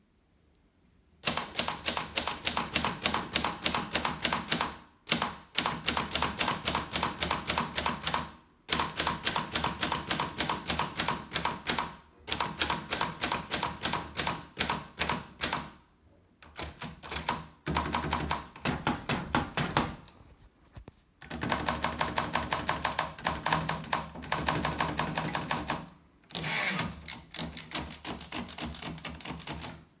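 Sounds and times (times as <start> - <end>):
typewriter key strikes: 16.5 - 20.3, 21.3 - 26.4
typewriter bell ringing: 19.6 - 21.8, 25.0 - 26.8.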